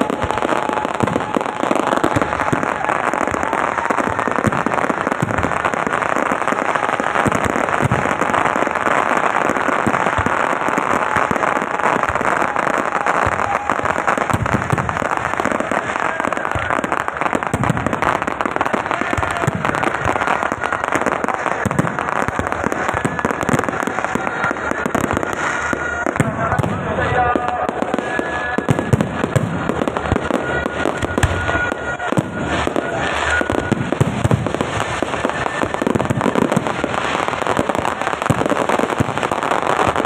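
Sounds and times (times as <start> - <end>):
ground-wheel fireworks fizzing and crackling: 0.0 - 40.0.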